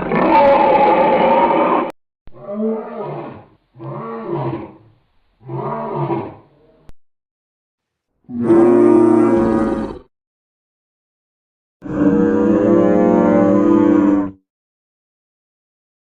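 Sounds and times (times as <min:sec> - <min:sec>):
monster calls rising and falling: 0:00.0 - 0:03.3
monster roar: 0:00.0 - 0:04.8, 0:08.3 - 0:10.1, 0:11.8 - 0:14.4.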